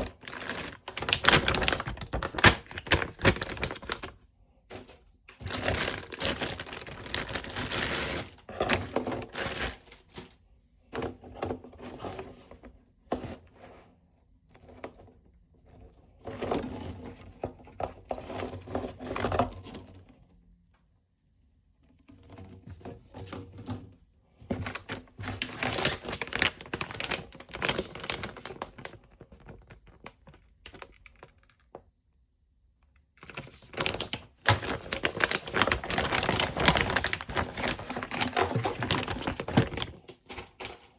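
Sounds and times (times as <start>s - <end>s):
clicking and rustling handling noise: 32.8s - 40.9s.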